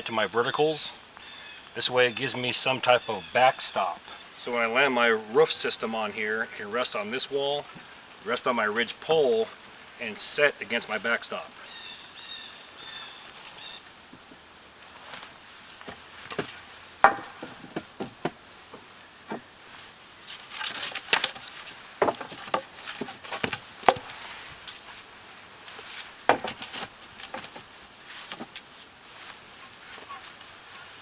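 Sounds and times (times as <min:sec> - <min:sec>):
branches rustling: 0:00.0 - 0:31.0
wooden poles knocking together: 0:15.8 - 0:19.5, 0:20.4 - 0:24.2, 0:26.3 - 0:28.6.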